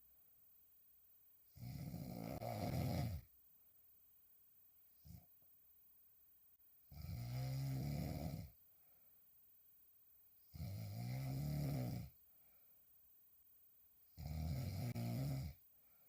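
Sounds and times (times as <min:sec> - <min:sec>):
woman snoring loudly: 0:01.6 - 0:03.3, 0:06.9 - 0:08.6, 0:10.5 - 0:12.1, 0:14.2 - 0:15.6.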